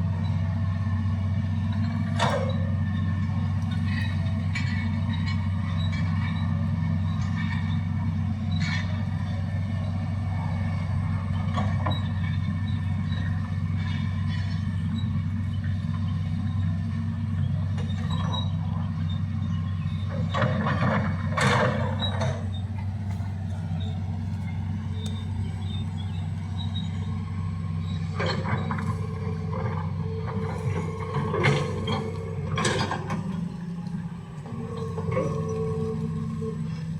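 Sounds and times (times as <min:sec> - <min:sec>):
excavator diesel engine running: 0:00.0 - 0:36.9
metallic clanks and scrapes: 0:26.5 - 0:36.9.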